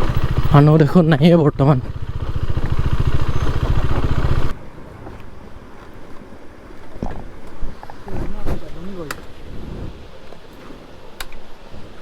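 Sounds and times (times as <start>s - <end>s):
motorcycle engine running: 0.0s - 4.5s.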